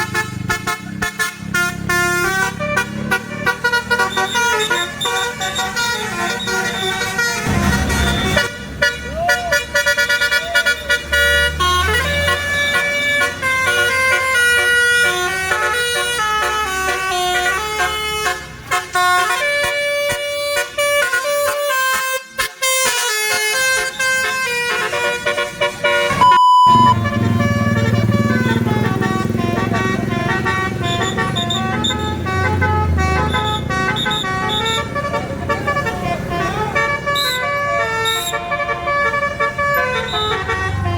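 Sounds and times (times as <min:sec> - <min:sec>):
bus engine running: 0:00.0 - 0:40.9
multi-tone bus horn melody: 0:00.0 - 0:40.9
short steady beep: 0:26.2 - 0:27.0.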